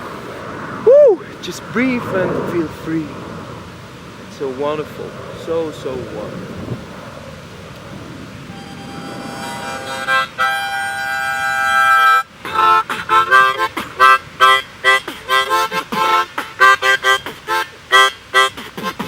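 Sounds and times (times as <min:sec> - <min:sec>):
harmonica chords: 0:08.5 - 0:19.0
beatbox breathed through harmonica: 0:12.5 - 0:19.0.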